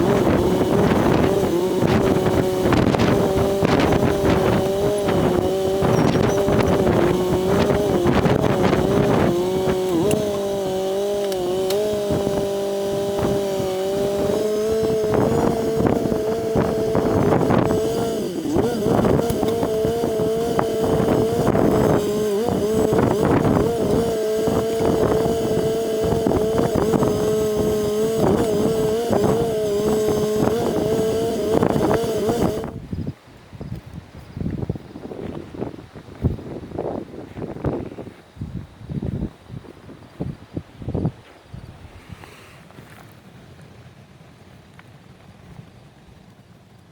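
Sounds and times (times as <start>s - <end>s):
backhoe engine running: 0.0s - 32.8s.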